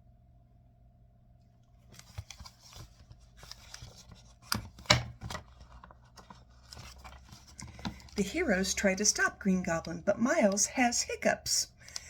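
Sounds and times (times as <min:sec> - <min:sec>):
paper page turning: 0:01.8 - 0:09.2.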